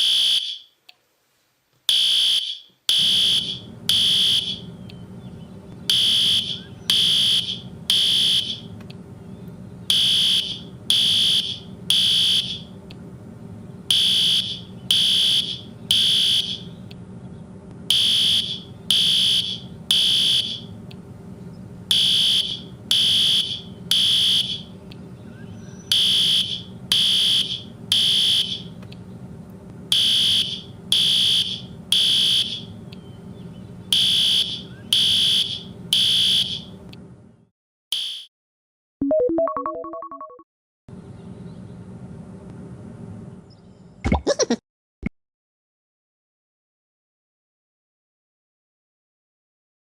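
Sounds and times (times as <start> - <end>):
fire alarm beeping: 0.0 - 0.6, 1.9 - 4.7, 5.9 - 8.7, 9.9 - 12.7, 13.9 - 16.7, 17.9 - 20.7, 21.9 - 24.7, 25.9 - 28.7, 29.9 - 32.7, 34.0 - 36.8.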